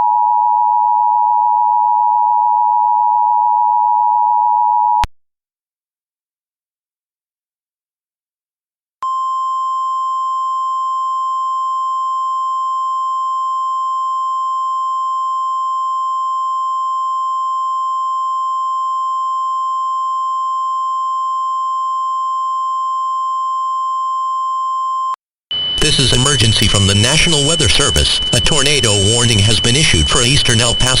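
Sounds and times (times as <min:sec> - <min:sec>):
steady alarm tone: 0:25.5 - 0:31.0.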